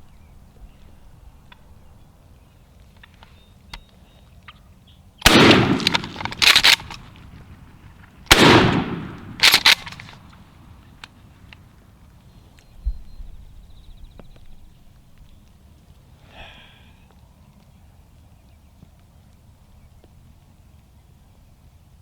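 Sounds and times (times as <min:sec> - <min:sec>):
shotgun blasts: 0:05.2 - 0:07.6, 0:08.3 - 0:10.3.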